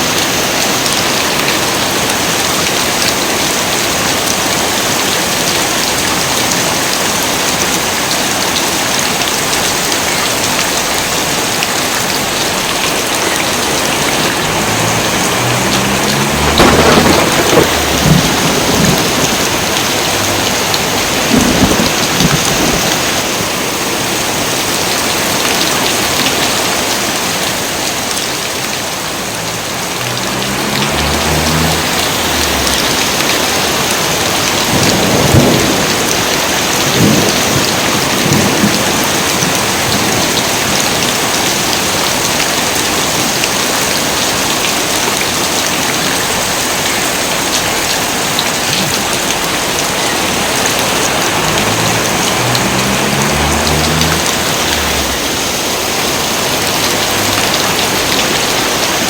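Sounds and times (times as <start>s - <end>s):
heavy rain pouring: 0.0s - 59.0s
thunder rumbling and cracking: 12.3s - 23.8s, 29.2s - 42.5s, 48.7s - 59.0s.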